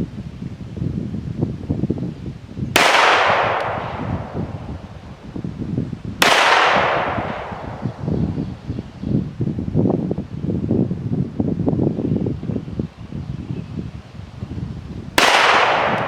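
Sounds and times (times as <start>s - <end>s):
wind buffeting microphone: 0.0s - 16.0s
pistol shots with echo: 2.8s - 4.6s, 6.2s - 8.0s, 15.2s - 16.0s.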